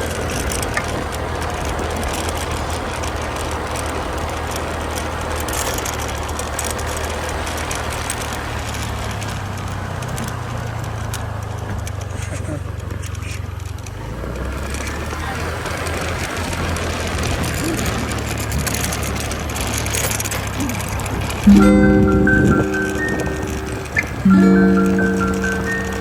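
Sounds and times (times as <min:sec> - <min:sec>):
road noise: 0:00.0 - 0:26.0
vehicle engine hum: 0:00.0 - 0:26.0.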